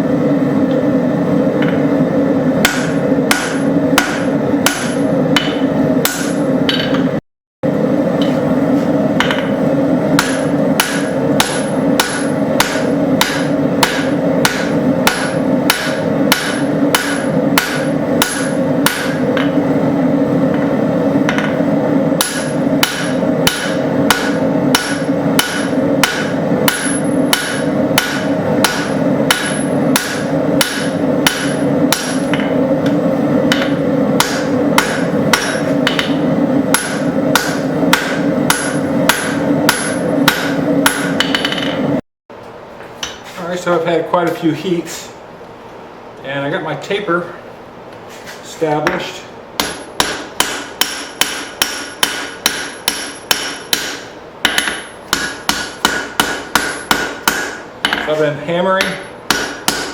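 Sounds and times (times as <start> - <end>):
constant low roar: 0.0 - 42.0
hammer striking steel on anvil: 2.6 - 7.2, 9.2 - 19.6, 20.5 - 21.6, 22.2 - 41.9, 48.8 - 58.2, 58.8 - 59.9.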